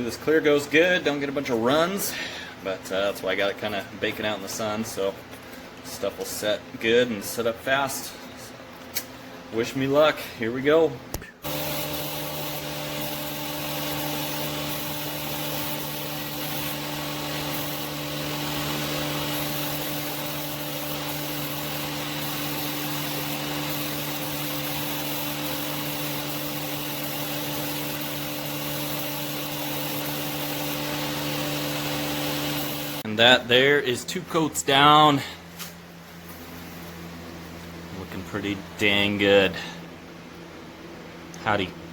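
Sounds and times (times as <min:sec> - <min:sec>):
motor humming: 0:11.4 - 0:33.1.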